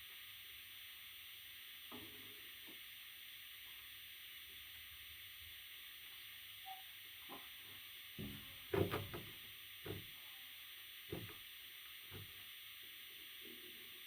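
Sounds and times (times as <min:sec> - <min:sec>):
steady background hiss: 0:00.0 - 0:14.0
soft knocks and bumps: 0:08.2 - 0:10.1, 0:11.1 - 0:11.4.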